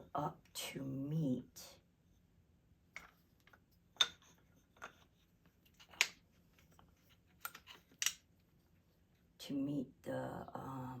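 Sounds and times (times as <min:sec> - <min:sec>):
wood pieces knocking together: 0:03.0 - 0:05.0, 0:05.7 - 0:06.3, 0:07.4 - 0:08.2.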